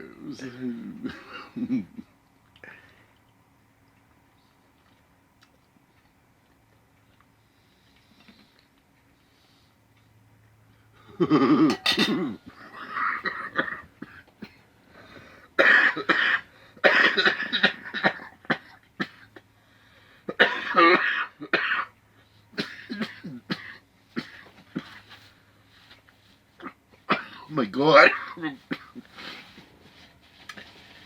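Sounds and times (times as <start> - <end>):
man coughing and hacking: 0.8 - 2.0, 11.2 - 14.6, 15.6 - 19.4, 20.3 - 21.9, 22.6 - 25.0, 26.6 - 29.0.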